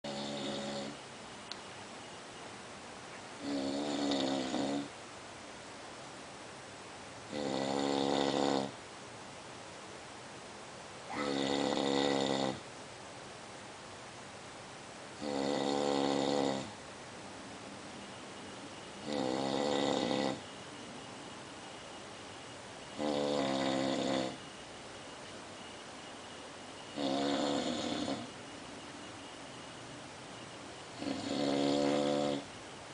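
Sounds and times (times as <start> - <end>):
low steady hiss: 0.0 - 32.9
person snoring: 0.1 - 1.0, 3.4 - 4.9, 7.3 - 8.8, 11.1 - 12.6, 15.2 - 16.7, 19.0 - 20.4, 23.0 - 24.4, 27.0 - 28.3, 31.0 - 32.5.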